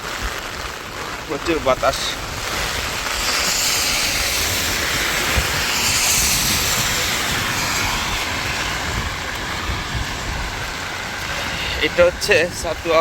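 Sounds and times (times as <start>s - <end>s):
heavy rain hissing: 0.0s - 13.0s
wind buffeting microphone: 0.0s - 13.0s.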